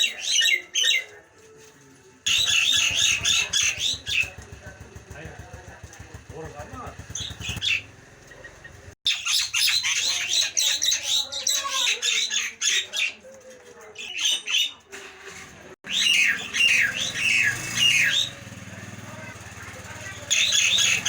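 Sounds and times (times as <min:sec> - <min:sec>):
bird squawking: 0:00.0 - 0:01.1, 0:02.3 - 0:04.6, 0:06.8 - 0:13.2, 0:15.8 - 0:21.0.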